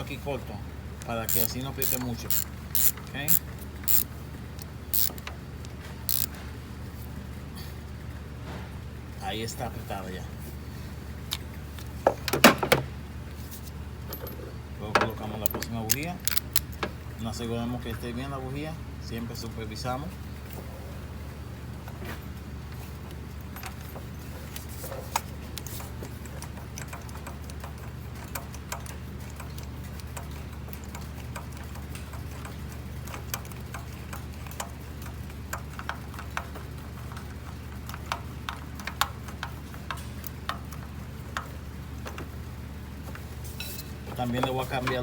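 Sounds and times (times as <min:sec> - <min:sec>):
metallic clicks of hand tools: 0:01.0 - 0:05.3, 0:06.1 - 0:06.3, 0:15.4 - 0:16.9.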